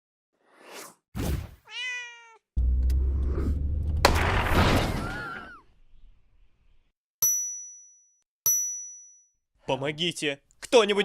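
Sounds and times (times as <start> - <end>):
cat meowing: 1.7 - 2.4.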